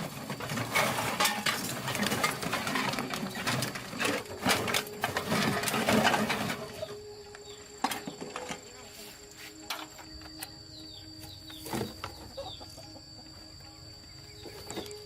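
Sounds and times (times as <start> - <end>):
hard objects clattering: 0.0 - 8.8.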